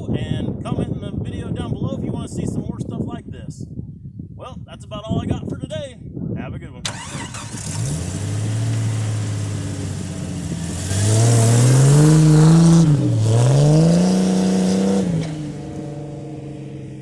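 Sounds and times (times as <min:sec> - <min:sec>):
car engine idling and revving: 0:06.9 - 0:17.0.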